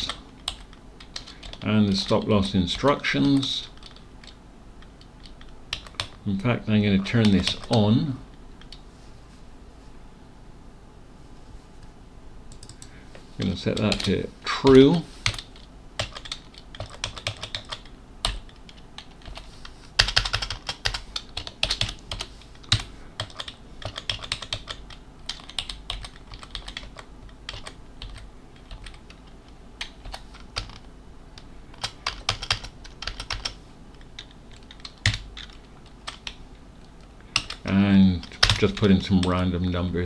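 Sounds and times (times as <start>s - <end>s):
computer keyboard key clicks: 12.5s - 12.9s.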